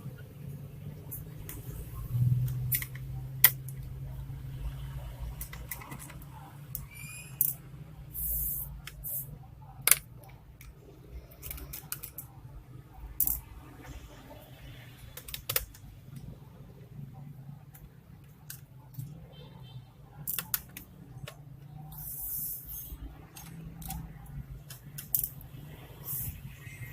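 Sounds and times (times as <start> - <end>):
tools and screws handled: 5.4 - 6.2, 11.3 - 12.4
brief squeak: 6.8 - 7.5.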